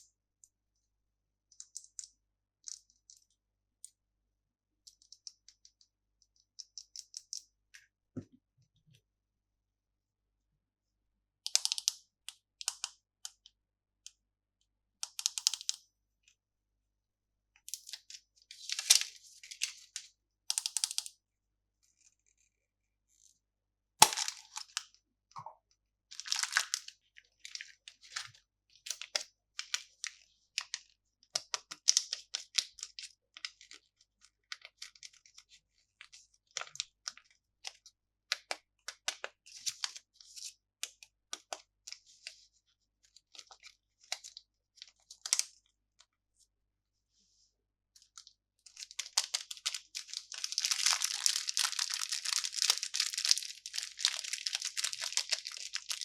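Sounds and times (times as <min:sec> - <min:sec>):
candy wrapper crinkling: 0:24.0 - 0:24.8, 0:26.2 - 0:26.9, 0:49.0 - 0:56.0.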